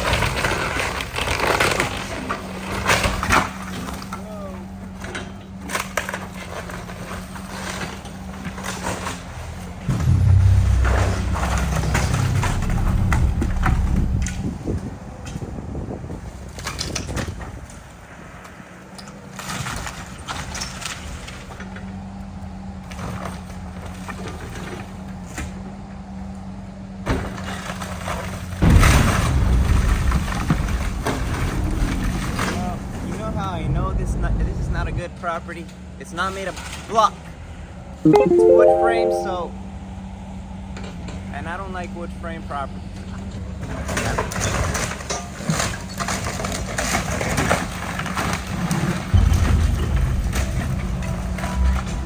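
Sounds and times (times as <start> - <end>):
loud low rumbling: 9.8 - 14.9
heavy machine engine running: 9.9 - 14.7.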